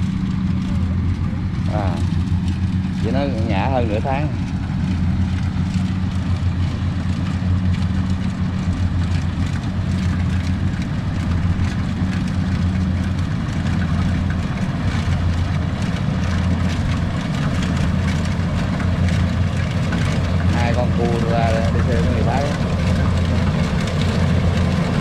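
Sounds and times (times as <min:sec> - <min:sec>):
diesel engine humming: 0:00.0 - 0:25.0.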